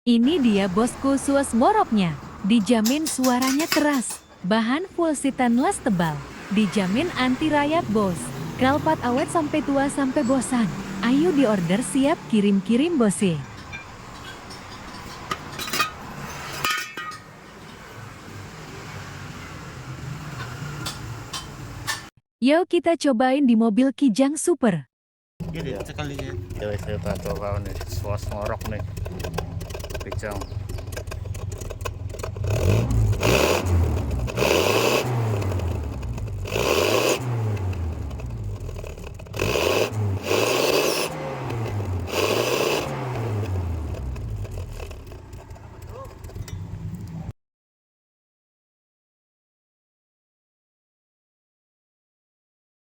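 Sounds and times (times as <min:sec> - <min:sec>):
metal clinking: 0:13.4 - 0:17.8
car engine revving raspy growl: 0:25.4 - 0:47.3.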